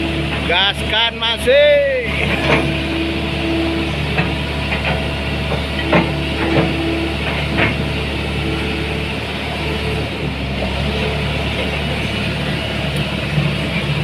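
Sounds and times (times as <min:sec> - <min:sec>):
excavator diesel engine running: 0:00.0 - 0:14.0
sharp metallic knocks: 0:03.9 - 0:08.0.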